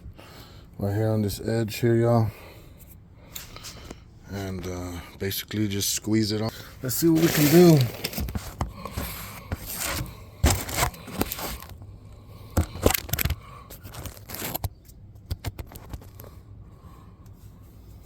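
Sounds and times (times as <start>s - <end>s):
rubber tire scraping on wheel rim: 6.9s - 11.7s.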